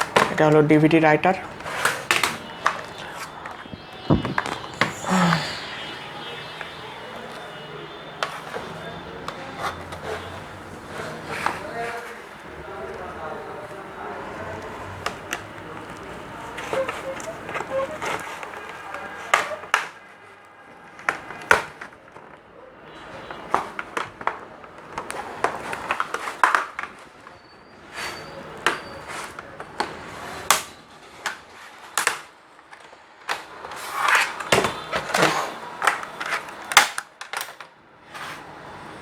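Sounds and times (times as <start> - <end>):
plastic laptop case clicking: 1.5 - 4.8, 14.6 - 20.0, 31.3 - 37.8.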